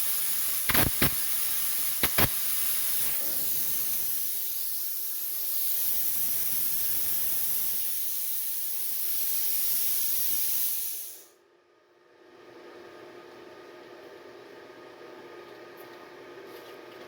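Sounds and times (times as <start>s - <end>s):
plasma cutter hissing: 0.0s - 11.4s.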